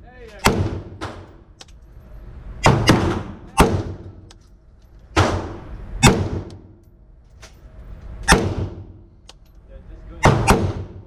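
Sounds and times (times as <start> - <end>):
gunshots with echo: 5.2 - 6.7, 10.2 - 11.0.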